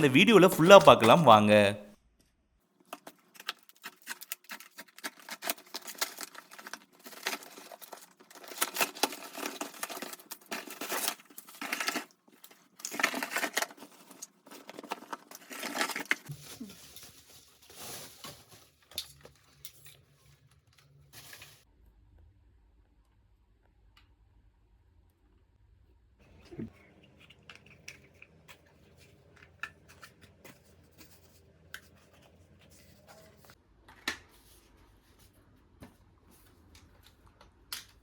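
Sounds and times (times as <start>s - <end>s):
cardboard and plastic rustling: 3.0s - 19.9s.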